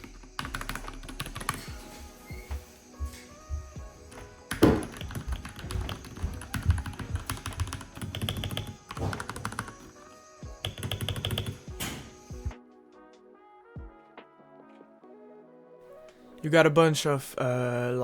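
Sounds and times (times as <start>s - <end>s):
mechanical keyboard typing: 0.0s - 1.7s, 4.5s - 9.7s, 10.6s - 12.0s
background music: 0.0s - 18.0s.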